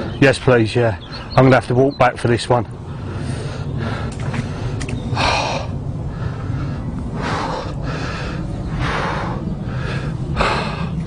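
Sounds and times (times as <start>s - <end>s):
steady low rumble: 0.0s - 11.0s
man breathing heavily: 2.8s - 11.0s.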